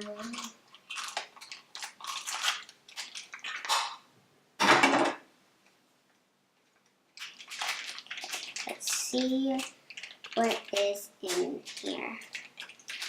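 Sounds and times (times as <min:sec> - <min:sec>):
packaging crinkling and rustling: 0:00.0 - 0:04.0, 0:06.6 - 0:13.0
packaging crunch: 0:00.0 - 0:04.0, 0:07.1 - 0:13.0.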